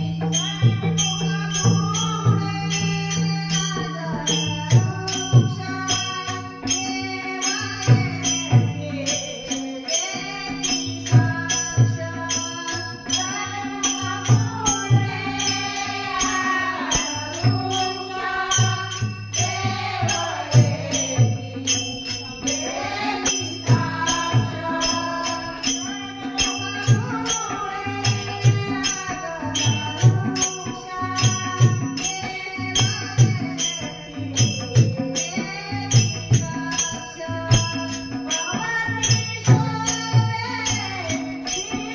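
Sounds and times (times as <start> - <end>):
jingling metallic percussion: 0.0 - 41.9
woman singing: 0.0 - 41.9
drum beat: 14.0 - 33.6.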